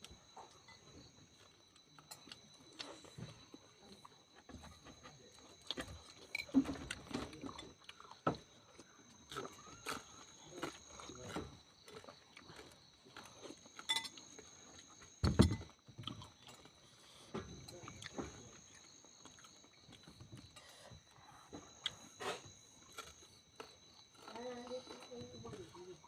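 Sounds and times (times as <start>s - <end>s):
person chewing: 5.5s - 15.2s, 16.0s - 25.8s.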